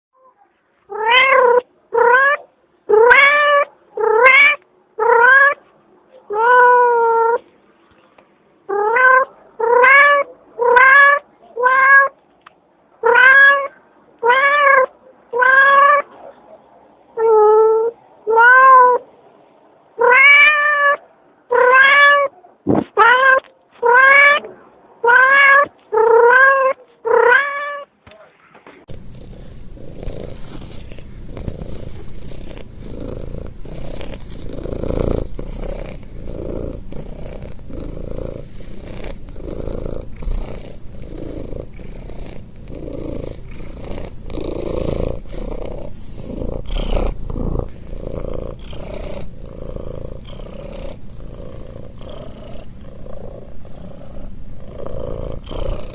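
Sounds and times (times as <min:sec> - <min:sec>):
cat meowing: 0:00.2 - 0:05.6, 0:06.3 - 0:07.4, 0:08.7 - 0:12.2, 0:13.0 - 0:16.2, 0:17.2 - 0:19.0, 0:20.0 - 0:22.3, 0:23.0 - 0:27.9
cat snoring with squeaky calls: 0:28.9 - 0:55.9.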